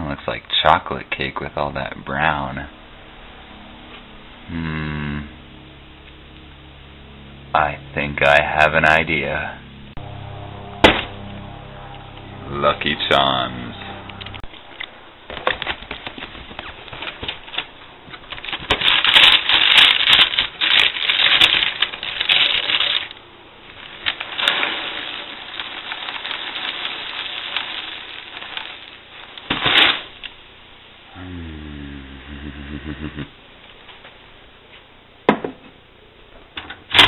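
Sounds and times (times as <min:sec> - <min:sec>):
loud rustling: 0:15.3 - 0:23.1
cereal pieces rattling onto plate: 0:18.3 - 0:23.1, 0:23.9 - 0:29.0.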